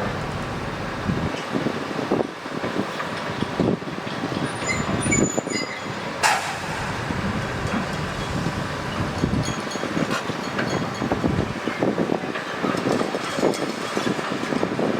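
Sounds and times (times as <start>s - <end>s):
heavy machinery rumbling: 0.0s - 1.9s, 6.2s - 11.5s
sharp hiss of air: 6.2s - 9.2s.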